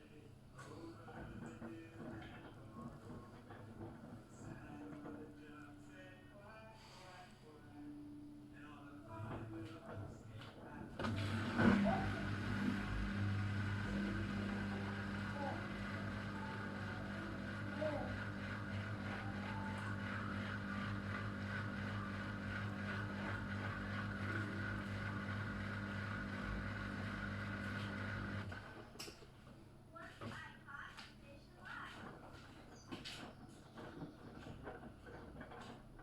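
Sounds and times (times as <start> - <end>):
washing machine humming: 9.1 - 30.0.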